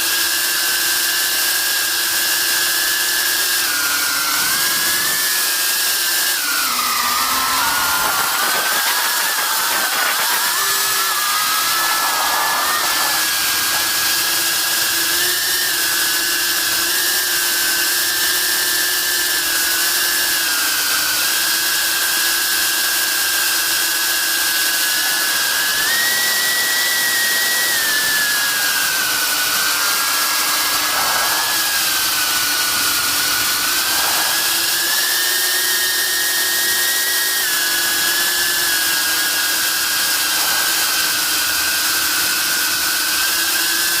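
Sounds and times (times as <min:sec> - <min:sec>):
drone motors whining: 0:00.0 - 0:44.0.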